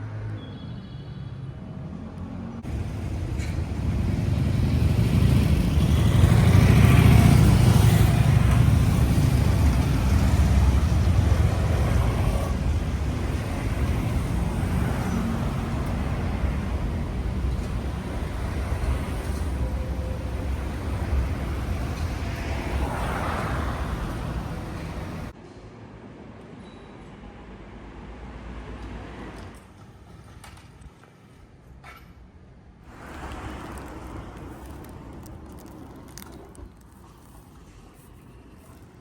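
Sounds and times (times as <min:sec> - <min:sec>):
train rushing rumble: 0:02.6 - 0:25.4.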